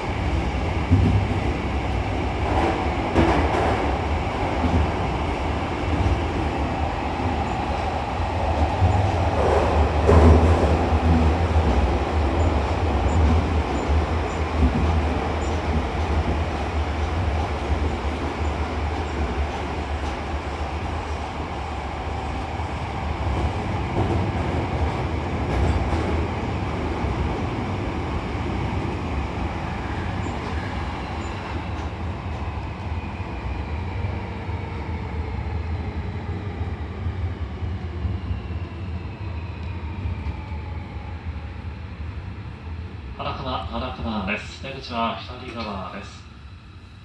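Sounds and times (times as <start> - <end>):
train wheel noise: 0.0 - 35.4.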